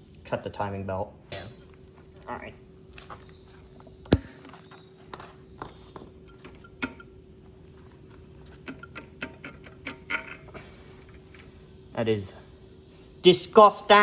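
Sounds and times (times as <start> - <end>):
faint steady hum: 0.0 - 14.0
hand tools clicking and knocking: 5.6 - 7.1, 8.1 - 10.6.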